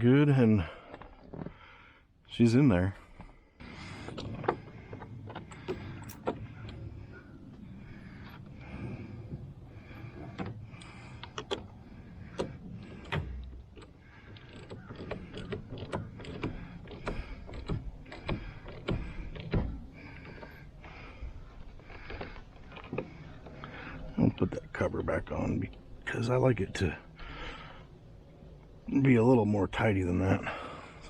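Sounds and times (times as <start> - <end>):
plastic parts clicking and knocking: 3.8 - 6.8, 7.8 - 27.8.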